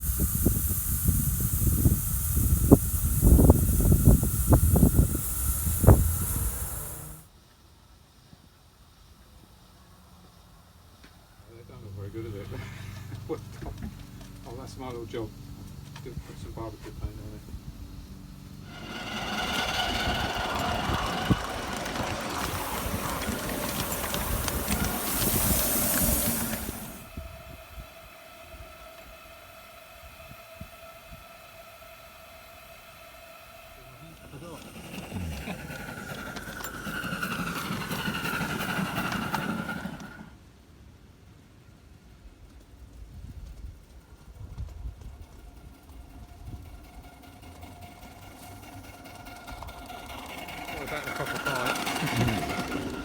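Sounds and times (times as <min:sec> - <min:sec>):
steam locomotive hissing: 0:00.0 - 0:09.7, 0:10.4 - 0:40.5, 0:43.0 - 0:53.0
low rumbling: 0:17.4 - 0:28.9.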